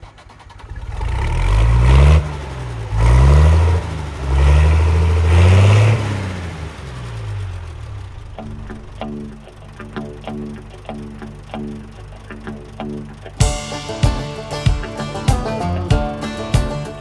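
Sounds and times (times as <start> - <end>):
large engine revving: 0.0 - 13.4
guitar music: 8.4 - 17.0.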